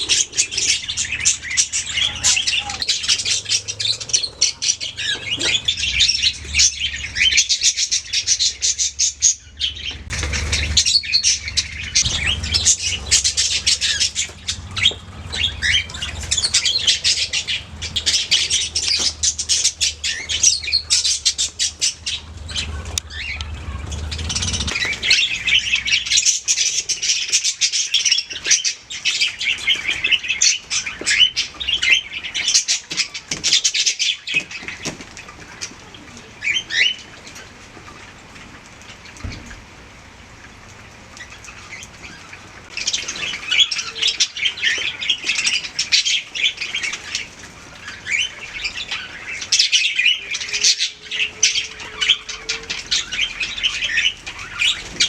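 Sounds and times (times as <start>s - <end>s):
budgies chirping and warbling: 0.0s - 55.0s
low rumble: 8.7s - 26.2s.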